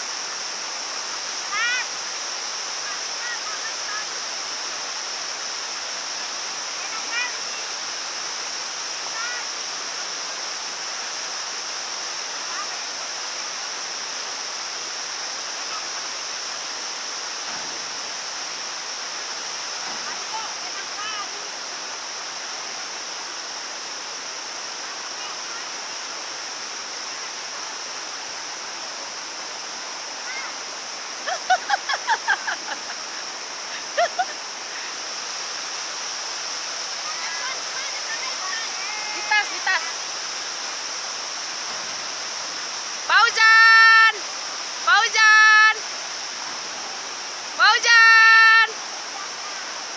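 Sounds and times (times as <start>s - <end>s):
waterfall rushing: 0.0s - 49.9s.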